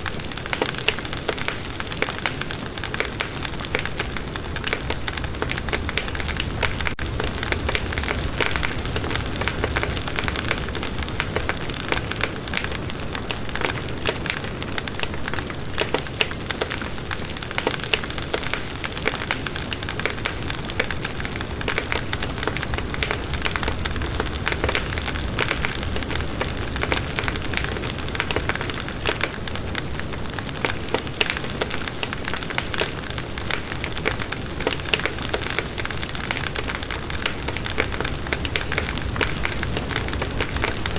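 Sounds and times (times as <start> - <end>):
bonfire crackling: 0.0 - 40.9
low fire rumble: 2.6 - 40.9.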